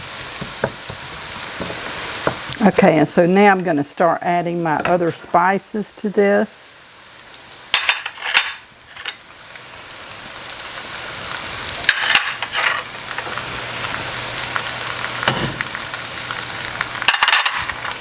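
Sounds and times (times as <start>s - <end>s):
food sizzling in hot oil: 0.0s - 18.0s
spoon scraping against pan: 11.9s - 13.3s.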